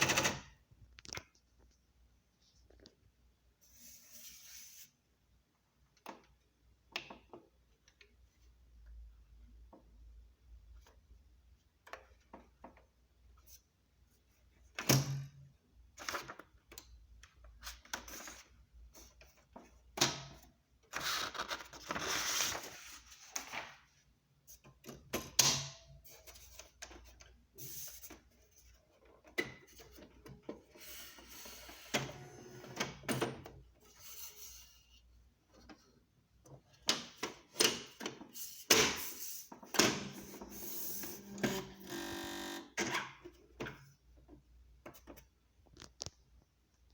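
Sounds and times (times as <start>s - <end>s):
electronic typewriter printing clicks: 0.0s - 0.6s, 39.7s - 43.1s
mechanical runs of noise: 40.2s - 42.8s.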